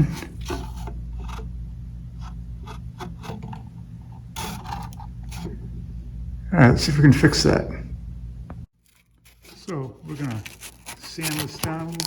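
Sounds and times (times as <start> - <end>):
rubbing scrape: 0.0 - 1.5, 2.2 - 5.6, 8.8 - 12.0
low electrical hum: 0.0 - 12.0
handling scrapes and clicks: 8.8 - 12.0.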